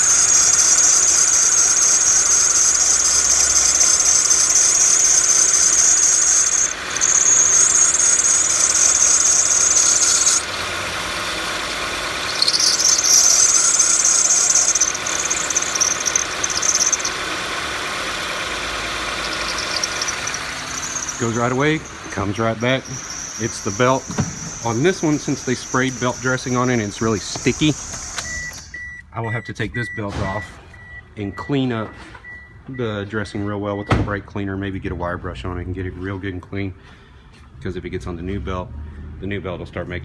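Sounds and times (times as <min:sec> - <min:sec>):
water squirting: 0:00.0 - 0:28.7
engine running: 0:00.0 - 0:28.8
drive belt squealing: 0:00.0 - 0:32.9.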